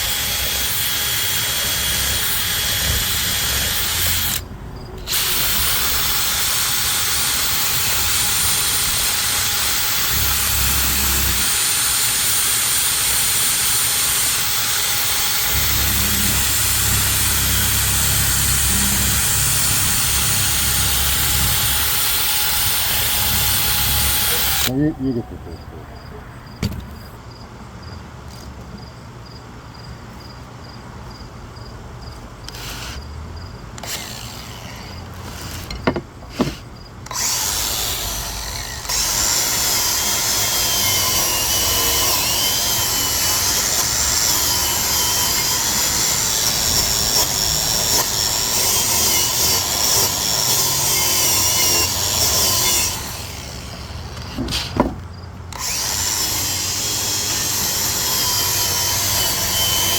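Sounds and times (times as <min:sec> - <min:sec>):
wire brush power tool scraping rust: 0:00.0 - 0:24.7, 0:32.5 - 0:33.0, 0:33.8 - 0:59.9
knocks: 0:26.6 - 0:27.2, 0:35.7 - 0:36.6, 0:54.4 - 0:55.1.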